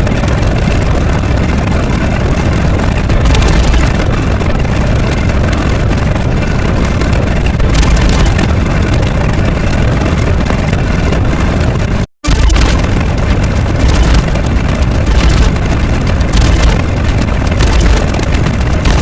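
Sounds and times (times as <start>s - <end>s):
loud low rumbling roar: 12.3s - 19.0s.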